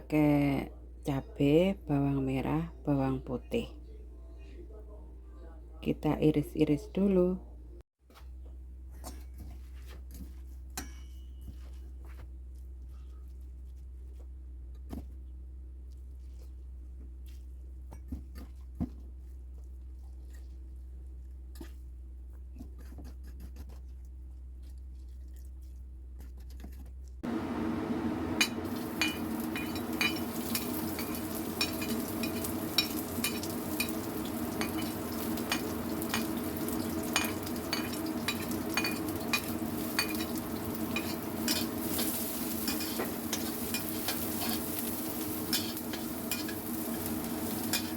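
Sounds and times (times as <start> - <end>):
low hum: 27.2 - 47.9
food sizzling in hot oil: 27.3 - 47.9
spatula scraping a pan: 28.7 - 47.9.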